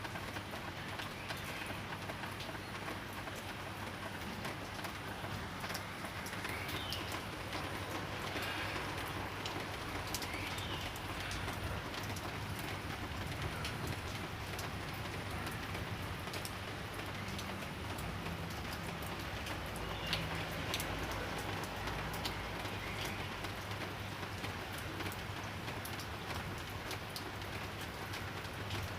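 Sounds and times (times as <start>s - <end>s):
light rain ticking on a surface: 0.0s - 28.9s.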